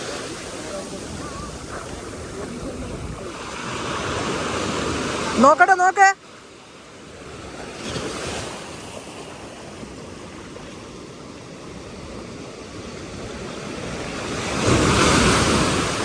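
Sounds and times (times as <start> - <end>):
wind buffeting microphone: 0.0 - 5.4
sea waves: 0.0 - 16.0.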